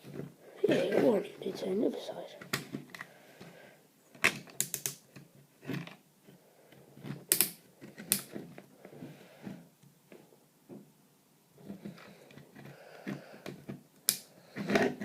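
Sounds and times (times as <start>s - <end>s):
plastic toy parts clicking: 4.2s - 5.2s, 7.3s - 8.3s.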